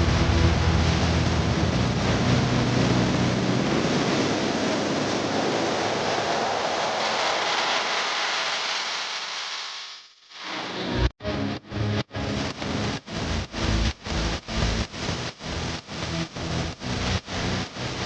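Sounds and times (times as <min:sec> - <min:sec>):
low hum: 0:00.0 - 0:05.1
steady rushing noise: 0:00.0 - 0:11.1, 0:12.1 - 0:18.0.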